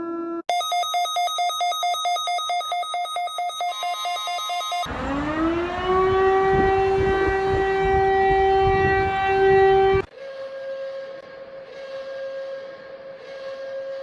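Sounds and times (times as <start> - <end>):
civil defense siren wailing: 4.8 - 10.1
low rumble: 4.9 - 10.1.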